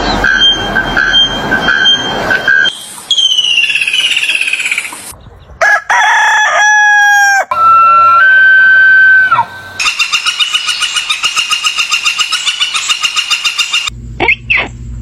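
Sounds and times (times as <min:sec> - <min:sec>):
rooster crowing: 0:05.6 - 0:09.5.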